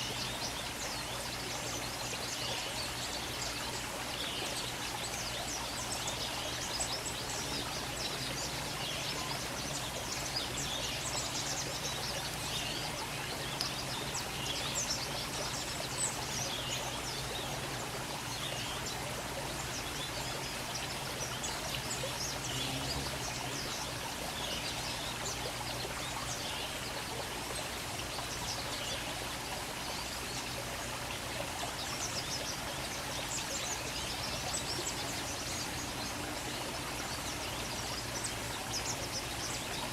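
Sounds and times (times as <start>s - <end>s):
small birds chirping: 0.0s - 30.6s.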